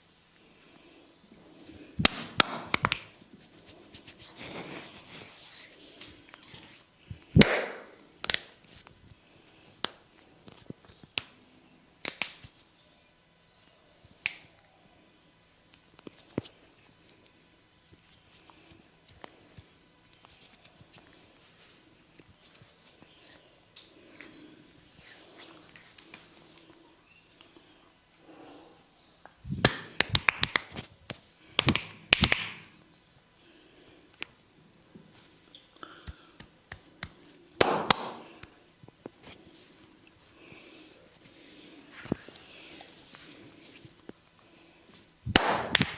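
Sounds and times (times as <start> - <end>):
hands slapping during massage: 2.0 - 4.3, 7.4 - 8.8, 9.8 - 11.3, 12.0 - 12.6, 29.5 - 32.7, 35.8 - 38.6, 45.3 - 45.9.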